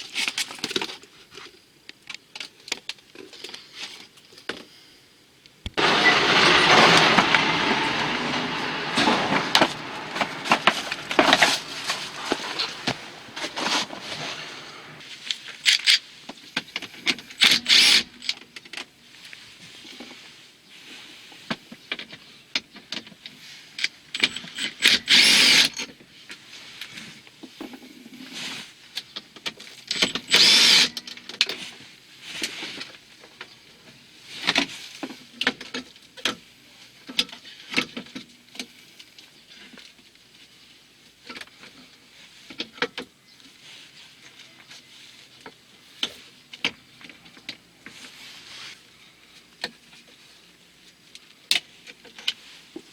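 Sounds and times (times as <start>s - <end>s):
loud bursts: 5.8s - 15.0s
hand tools and plastic parts rattling: 5.8s - 18.9s, 21.9s - 33.5s.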